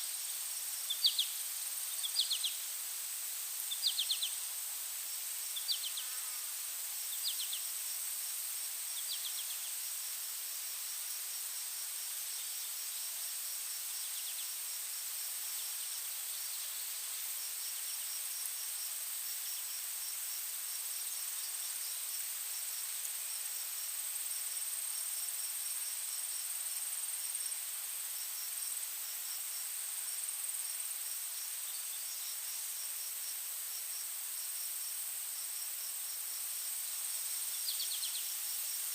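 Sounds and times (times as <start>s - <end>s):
insect high-pitched trill: 0.0s - 2.7s, 5.4s - 7.9s, 30.5s - 38.9s
pulsing insect chirp: 0.1s - 27.6s, 28.2s - 38.9s.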